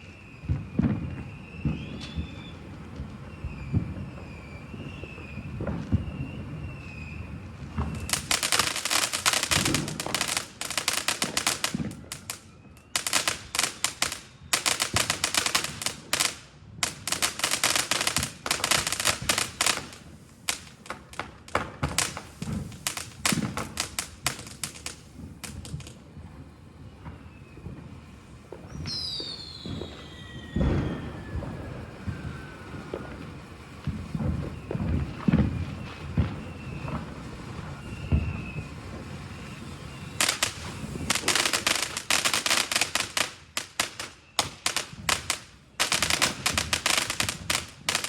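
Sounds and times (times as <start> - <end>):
whistles falling in pitch: 0.0 - 2.6, 28.7 - 33.2, 37.6 - 42.0
fireworks popping and crackling: 0.0 - 48.0.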